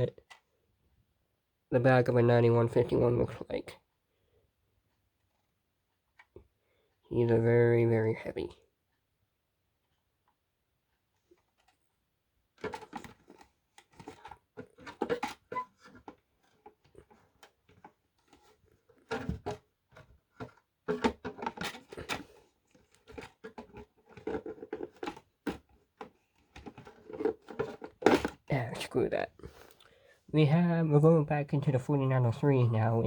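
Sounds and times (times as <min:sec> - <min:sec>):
devices clattering and knocking: 0:12.6 - 0:28.5.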